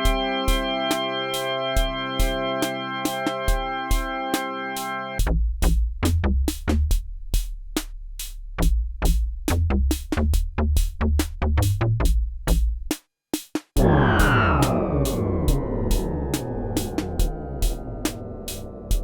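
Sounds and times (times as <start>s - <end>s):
drum machine beat: 0.0s - 4.2s, 5.2s - 19.0s
low bass line: 5.2s - 12.9s, 13.8s - 19.0s
dense synth tone sliding down: 13.8s - 19.0s.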